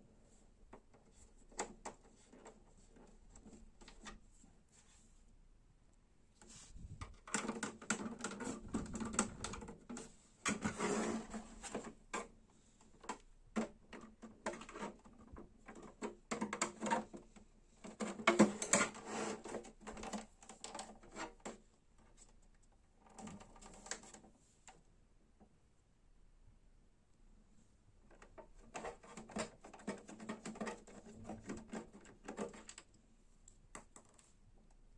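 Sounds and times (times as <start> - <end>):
printer plastic clicks and rattles: 7.2 - 10.6, 17.9 - 19.0.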